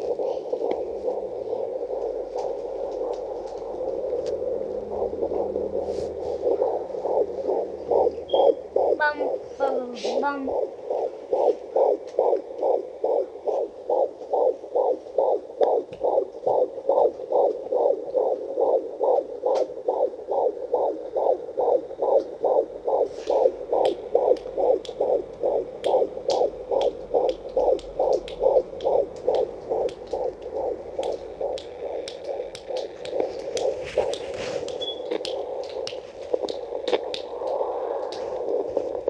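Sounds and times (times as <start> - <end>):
fetal heartbeat through doppler: 0.0 - 39.0.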